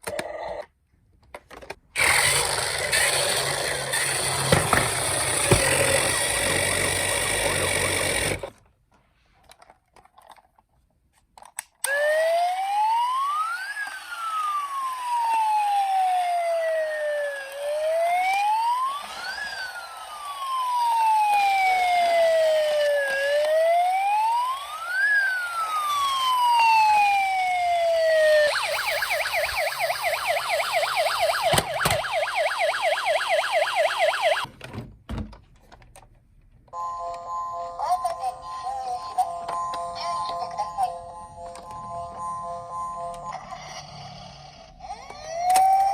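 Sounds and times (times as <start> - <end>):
police siren wailing: 11.9 - 34.5, 45.1 - 45.9.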